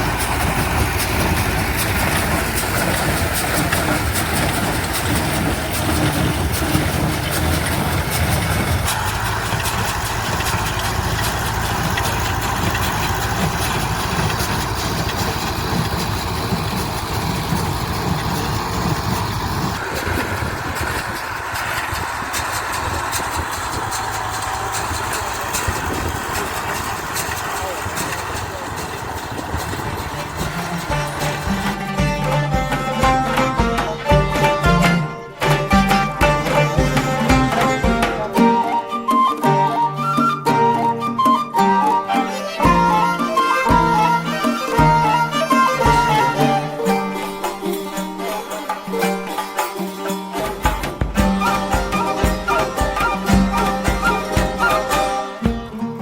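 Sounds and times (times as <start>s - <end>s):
vehicle engine running: 0.0s - 38.4s, 50.4s - 56.0s.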